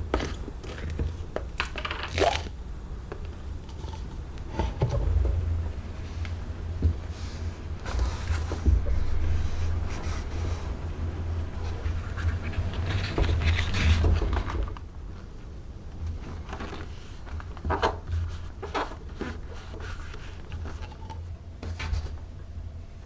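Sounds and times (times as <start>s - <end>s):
low hum: 2.6s - 15.0s.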